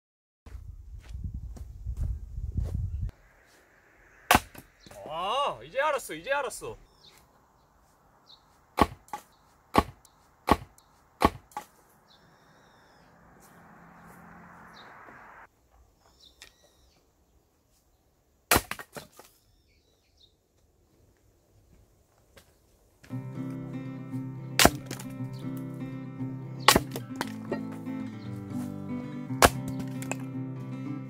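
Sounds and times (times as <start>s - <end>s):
axe chopping wood: 4.3s - 5.1s, 8.8s - 11.8s, 18.5s - 19.3s, 24.6s - 25.2s, 26.6s - 27.8s, 29.3s - 30.3s.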